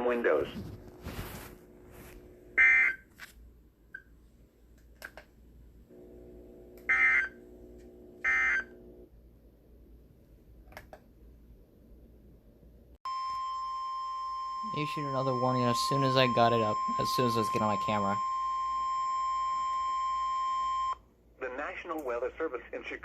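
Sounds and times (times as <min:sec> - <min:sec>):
loud electronic beeps: 0:14.6 - 0:21.0.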